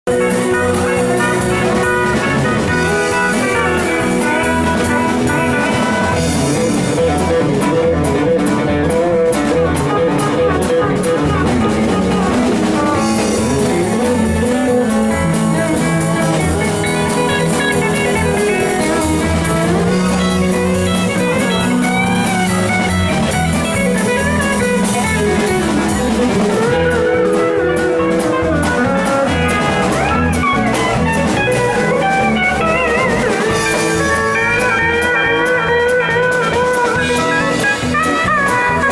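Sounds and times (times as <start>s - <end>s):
drum kit beat: 0.0s - 38.9s
electric guitar lines: 0.0s - 38.9s.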